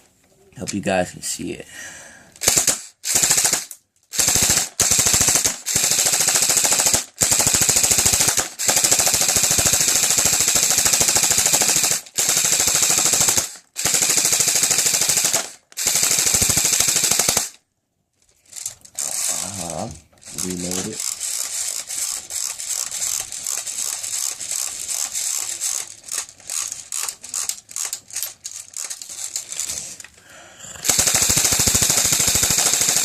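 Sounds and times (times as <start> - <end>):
airsoft rifle firing bursts: 2.4 - 17.6, 30.8 - 33.0.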